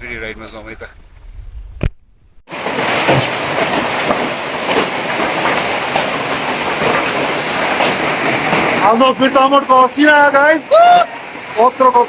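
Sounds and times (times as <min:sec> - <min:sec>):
rain: 0:00.8 - 0:12.0
hailstones clattering: 0:00.9 - 0:09.0.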